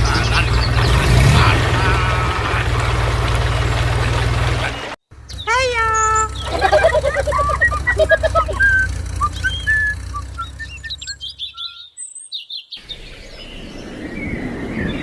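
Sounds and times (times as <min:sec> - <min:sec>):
songbirds chirping: 0:00.0 - 0:15.0.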